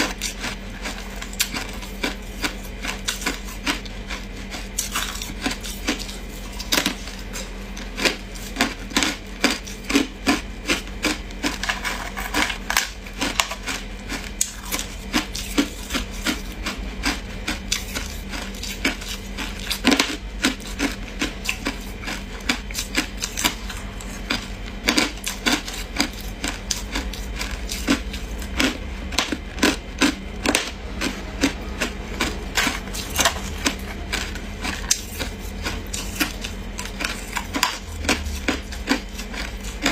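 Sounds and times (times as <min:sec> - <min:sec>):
ice crunching being chewed: 0:00.0 - 0:39.9
low hum: 0:10.1 - 0:39.9.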